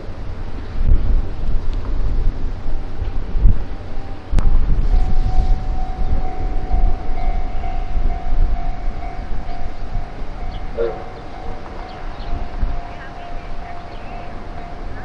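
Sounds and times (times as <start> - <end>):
wind rumble on microphone: 0.0 - 15.0
level-crossing warning bell: 2.7 - 4.4, 5.4 - 15.0.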